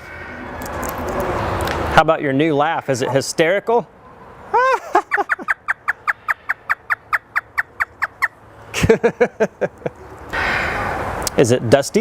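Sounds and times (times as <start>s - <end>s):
parrot imitating laughter: 4.5s - 8.3s.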